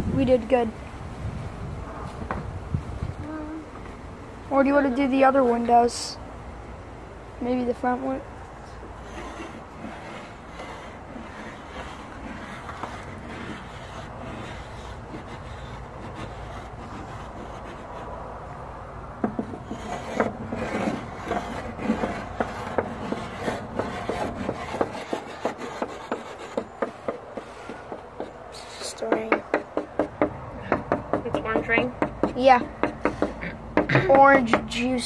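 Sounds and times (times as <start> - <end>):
low wind rumble: 0.0 - 33.8
chalk scraping on wood: 9.0 - 18.2, 19.3 - 33.4
chalk tapping on wood: 9.1 - 18.1, 19.2 - 34.8.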